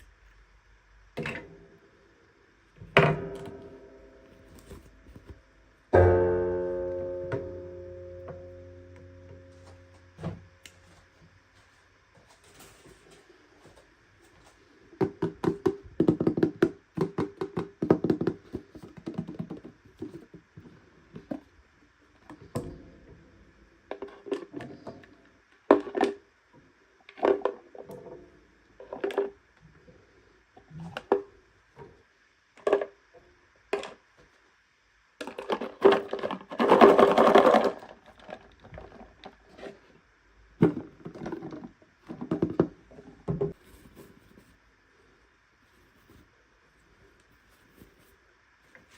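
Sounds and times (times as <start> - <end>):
packaging clicks and scrapes: 4.4 - 5.4.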